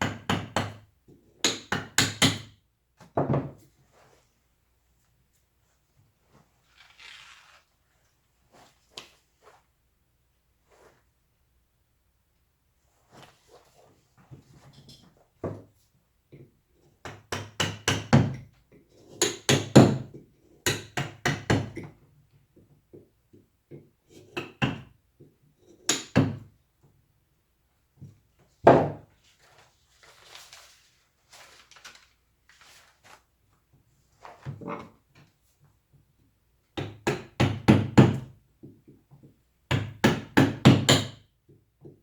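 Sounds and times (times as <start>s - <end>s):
carving tools tapping wood: 0.0s - 2.6s, 16.3s - 22.0s, 22.9s - 26.5s, 36.8s - 42.0s.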